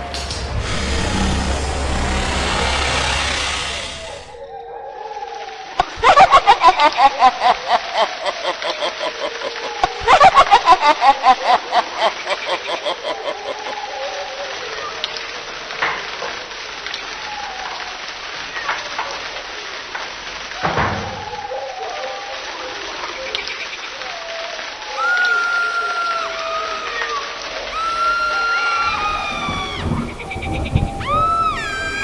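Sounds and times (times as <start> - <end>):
creaks and clicks: 0.0 - 4.4
rain-like hiss: 0.0 - 4.4, 5.6 - 32.0
pulsing laugh-like call: 0.4 - 4.4, 25.0 - 27.1, 27.7 - 32.0.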